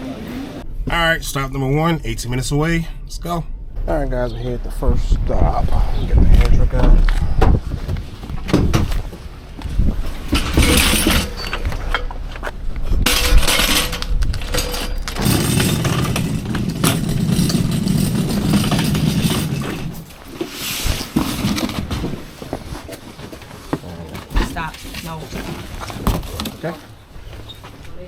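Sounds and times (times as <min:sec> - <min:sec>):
metal clattering and rattling: 0:00.6 - 0:28.0
small wheels rolling: 0:07.9 - 0:28.0.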